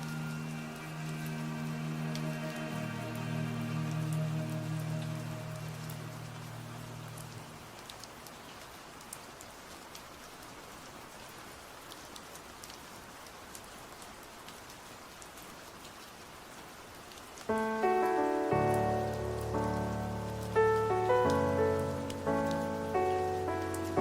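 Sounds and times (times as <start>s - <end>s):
song music: 0.0s - 7.0s, 17.5s - 24.0s
rain drop ticks: 0.0s - 16.1s, 16.9s - 24.0s
steady rainfall: 0.0s - 24.0s.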